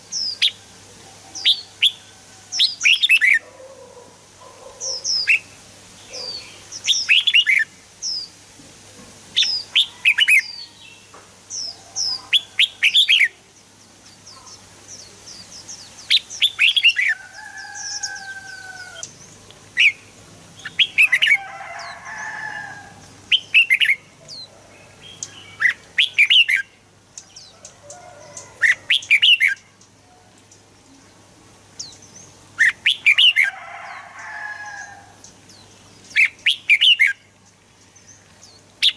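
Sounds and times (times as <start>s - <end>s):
soft warbled bird calls: 0.0s - 8.4s, 9.3s - 31.2s, 31.8s - 38.9s
bird singing whistled notes: 23.3s - 24.0s, 25.2s - 26.7s, 36.1s - 37.2s.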